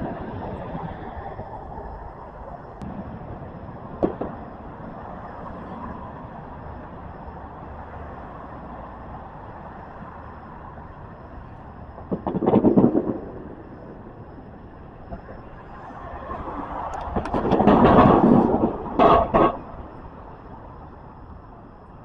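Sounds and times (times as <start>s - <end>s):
passing traffic: 0.0s - 22.0s.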